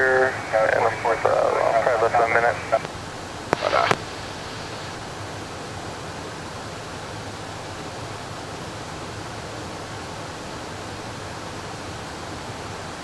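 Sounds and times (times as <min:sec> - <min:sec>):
jet cockpit engine and air rush: 0:00.0 - 0:05.8.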